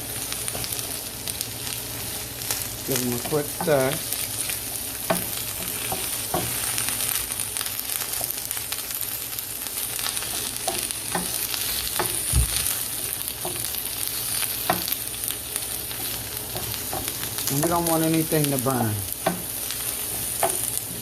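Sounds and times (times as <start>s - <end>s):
vegetables sizzling in oil: 0.0s - 21.0s
utensil tapping and scraping pan: 5.0s - 6.6s, 10.2s - 12.3s, 14.6s - 15.0s, 16.0s - 17.8s, 19.2s - 21.0s.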